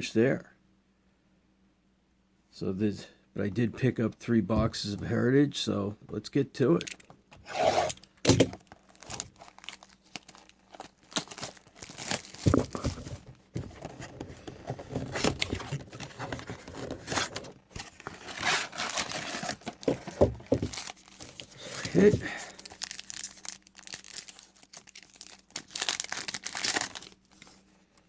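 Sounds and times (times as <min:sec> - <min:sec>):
cardboard and foil tearing: 0:07.6 - 0:13.1, 0:14.9 - 0:27.6
foil wrappers crinkling: 0:08.6 - 0:13.9, 0:14.9 - 0:27.7.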